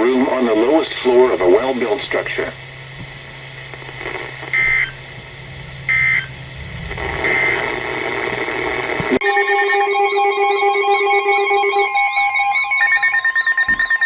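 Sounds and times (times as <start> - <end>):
radio hiss and hum: 0.0 - 9.2
steady multi-tone electronic signal: 0.0 - 14.0.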